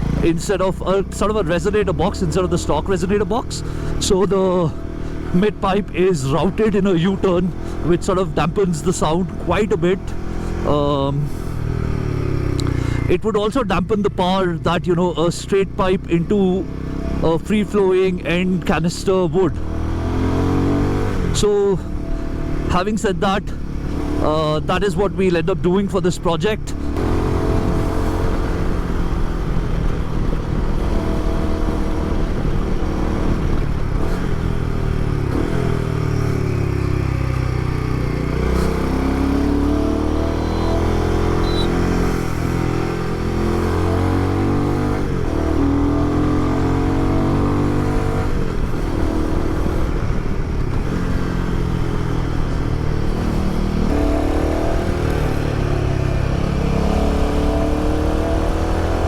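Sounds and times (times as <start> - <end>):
motorcycle engine revving: 0.0 - 59.0.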